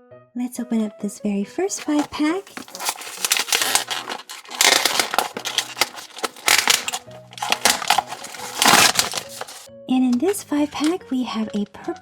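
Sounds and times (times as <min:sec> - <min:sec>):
background music: 0:00.0 - 0:12.0
plastic packaging crinkling: 0:01.8 - 0:09.7.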